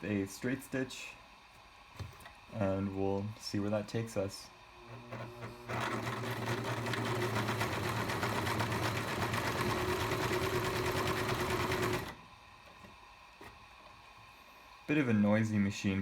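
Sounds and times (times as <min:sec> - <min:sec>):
sewing machine motor hum: 0:04.7 - 0:12.3
sewing machine needle clatter: 0:05.1 - 0:12.2.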